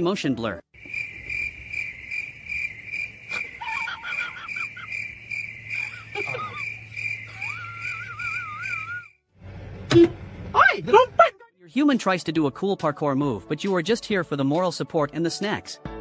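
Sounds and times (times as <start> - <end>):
crickets chirping: 0.8 - 9.2
warbling whistles: 1.8 - 9.2.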